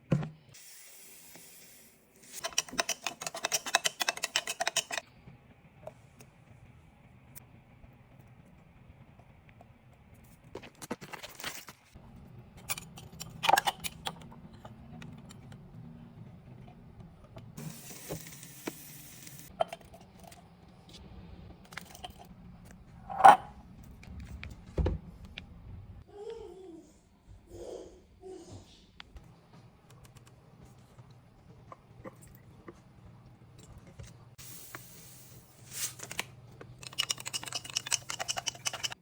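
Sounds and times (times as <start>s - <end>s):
utensils and dishes clinking: 2.3s - 5.0s, 12.6s - 14.7s, 35.8s - 39.0s.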